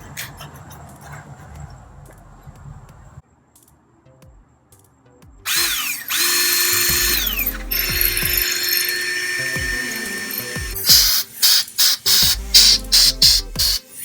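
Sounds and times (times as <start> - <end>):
power tool motor spinning: 5.5 - 13.8
sharp loud bursts: 5.5 - 13.9.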